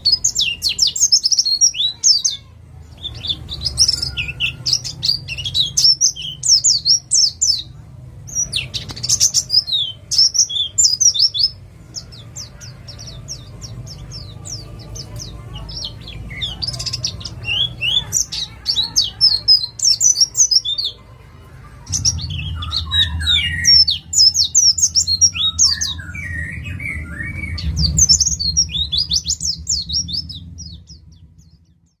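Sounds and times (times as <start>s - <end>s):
bird singing rapid high notes: 0.0s - 32.0s
steady low hum: 2.6s - 32.0s
lower warbled bird notes: 21.4s - 32.0s.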